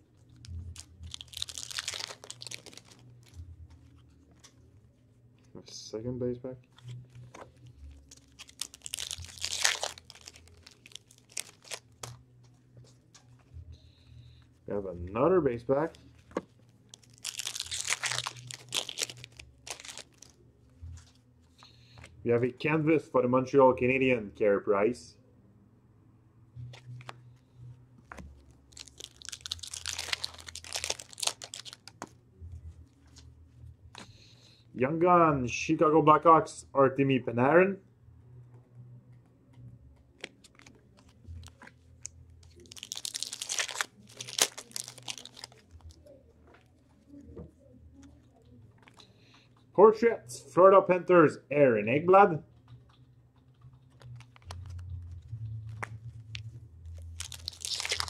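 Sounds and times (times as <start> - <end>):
foil wrapper crinkling and tearing: 0.2 - 4.5, 6.8 - 12.2, 16.0 - 20.4, 28.1 - 32.1, 40.2 - 46.6, 54.0 - 58.0.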